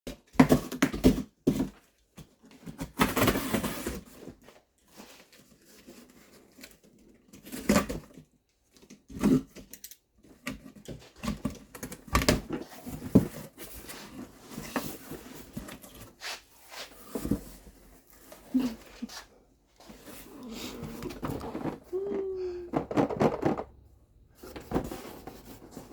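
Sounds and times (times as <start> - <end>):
cardboard box rustling and scraping: 11.0 - 22.0, 24.3 - 25.9.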